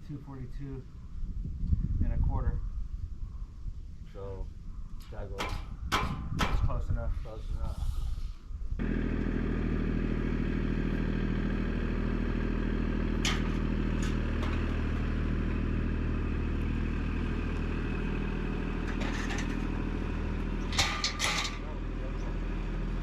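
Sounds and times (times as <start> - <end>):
engine running steadily: 8.8 - 23.0
clatter: 13.2 - 15.0, 18.8 - 19.7, 20.6 - 21.7.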